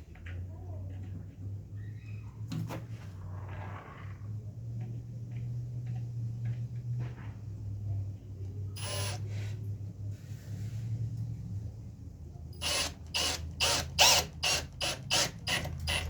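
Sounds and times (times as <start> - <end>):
low motor hum: 3.2 - 10.2
short whirring burst: 8.8 - 9.3.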